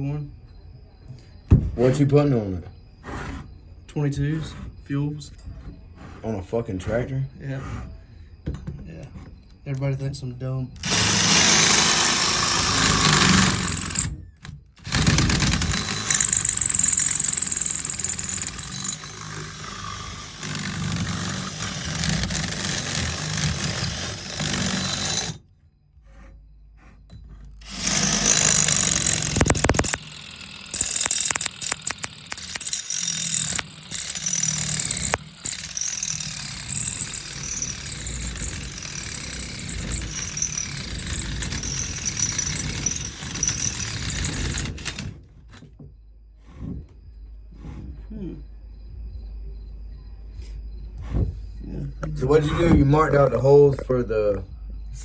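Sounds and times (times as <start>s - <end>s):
power tool cutting metal: 10.8s - 14.1s, 14.8s - 25.4s, 27.6s - 45.1s.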